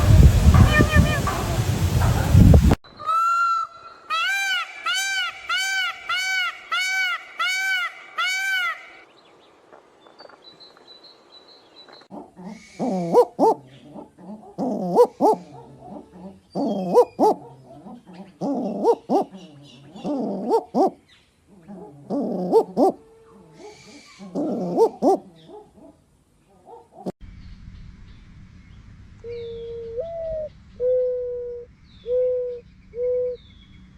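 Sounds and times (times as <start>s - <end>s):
bird calling: 0.0s - 9.4s, 10.0s - 33.9s
owl hooting: 3.0s - 9.0s, 12.1s - 21.0s, 21.6s - 26.0s, 29.2s - 33.6s.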